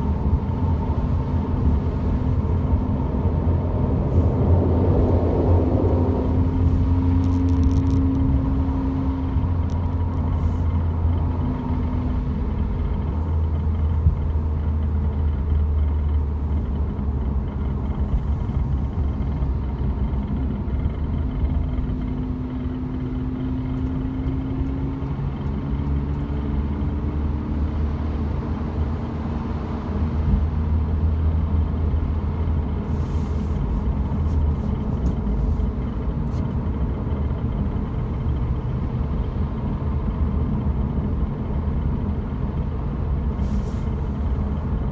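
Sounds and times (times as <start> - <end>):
car engine and road rumble: 0.0 - 44.9.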